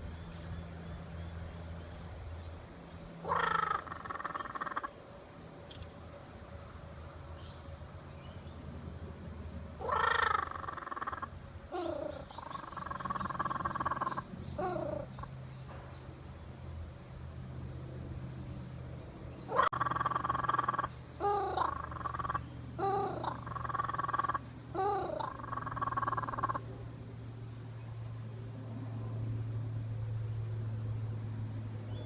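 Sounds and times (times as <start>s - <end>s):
kookaburra calling: 3.2s - 5.0s, 9.8s - 15.3s, 19.5s - 26.7s.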